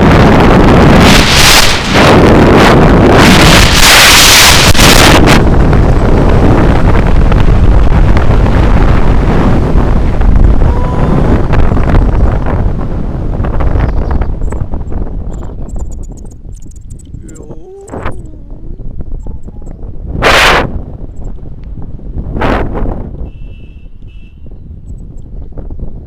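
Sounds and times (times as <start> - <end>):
loud wind buffeting microphone: 0.0 - 26.0.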